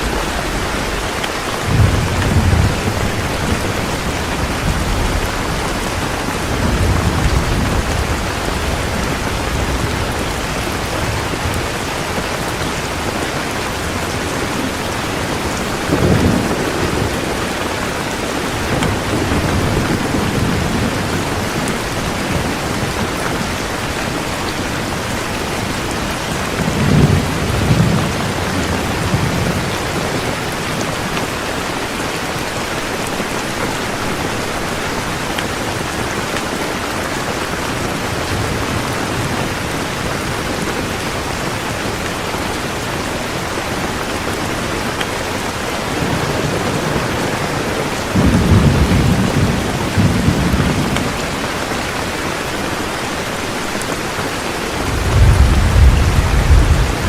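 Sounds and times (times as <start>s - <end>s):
thunder rumbling: 0.0s - 31.1s, 43.8s - 51.6s, 54.7s - 57.0s
heavy rain falling: 0.0s - 57.0s.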